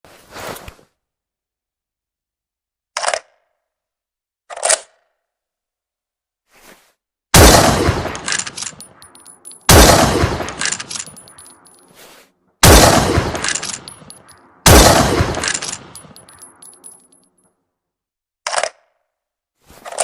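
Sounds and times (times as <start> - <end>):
rifle shots: 7.4 - 9.0, 9.7 - 11.4, 12.6 - 16.4
sharp metallic clicks: 8.0 - 11.9, 13.3 - 14.5, 15.2 - 17.2.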